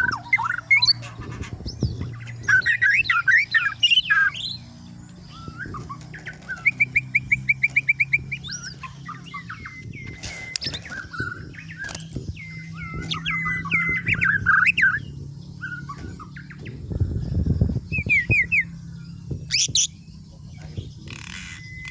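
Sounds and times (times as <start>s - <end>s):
bird trill: 0.0s - 21.9s
songbird singing whistled phrases: 5.2s - 16.7s, 17.9s - 18.8s, 19.5s - 20.2s.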